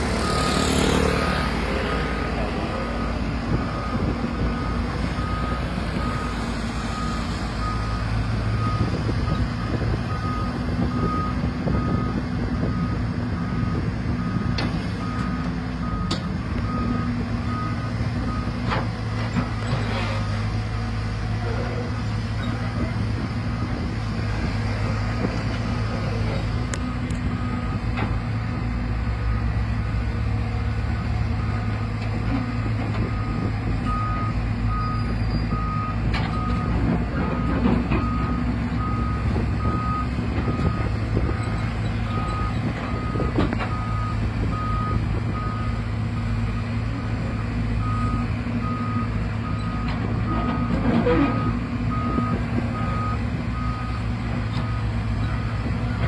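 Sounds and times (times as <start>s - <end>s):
excavator diesel engine running: 0.0s - 56.0s.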